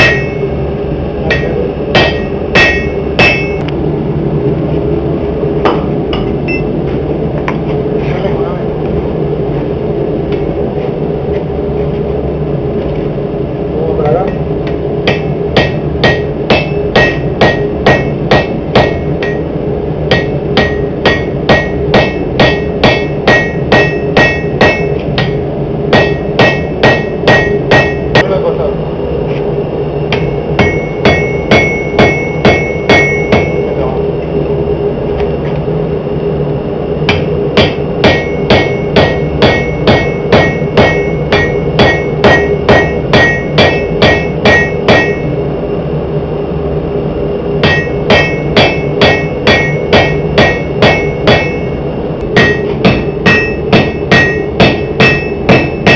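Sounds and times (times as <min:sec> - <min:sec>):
hammer striking anvil ringing: 0:00.0 - 0:00.5, 0:01.3 - 0:03.7, 0:15.1 - 0:19.5, 0:20.1 - 0:28.3, 0:30.1 - 0:33.7, 0:37.1 - 0:45.3, 0:47.6 - 0:51.8, 0:52.4 - 0:55.9
steady hum: 0:00.0 - 0:55.9.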